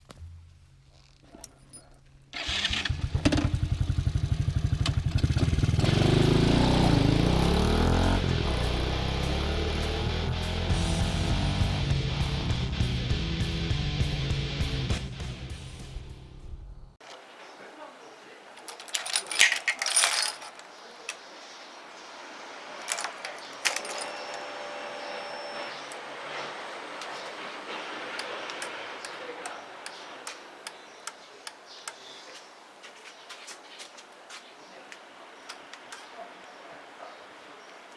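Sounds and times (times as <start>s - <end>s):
motorcycle engine starting and revving: 2.4s - 12.6s, 22.0s - 31.2s
small metal objects jangling: 18.5s - 21.6s, 22.8s - 30.4s
metallic clicks: 18.6s - 21.3s, 22.8s - 26.4s, 27.0s - 32.1s.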